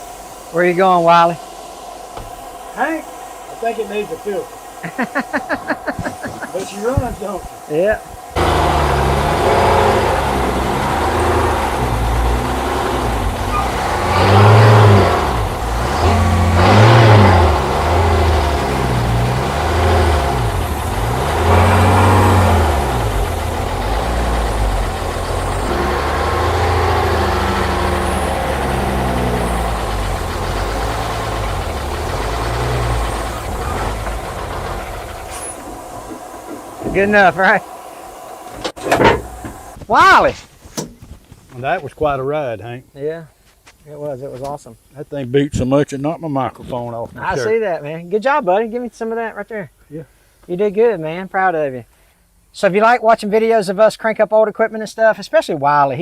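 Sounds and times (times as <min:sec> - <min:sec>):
truck engine revving under load: 0:01.4 - 0:39.9.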